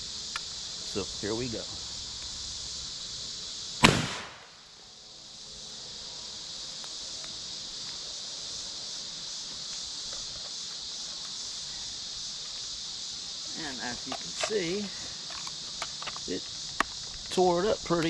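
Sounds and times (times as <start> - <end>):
insect chorus chirring: 0.0 - 18.0
shotgun blast echo: 3.8 - 4.6.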